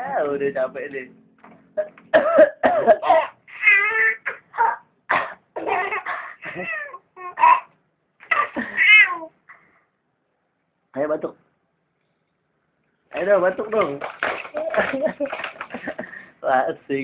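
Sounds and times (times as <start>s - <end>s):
baby squealing: 3.2s - 4.9s, 5.6s - 9.4s.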